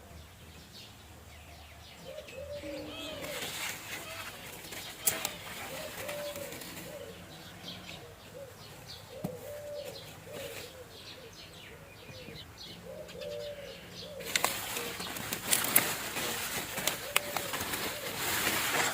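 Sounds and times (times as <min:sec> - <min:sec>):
small birds chirping: 0:00.0 - 0:18.9
dove cooing: 0:02.0 - 0:18.9
sharp clicks or rustles: 0:03.1 - 0:07.0, 0:14.2 - 0:18.9.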